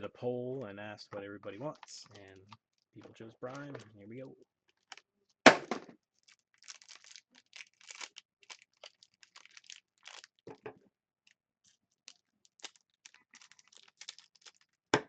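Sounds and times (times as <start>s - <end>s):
cardboard box crinkling and tearing: 6.2s - 10.4s, 12.5s - 14.8s.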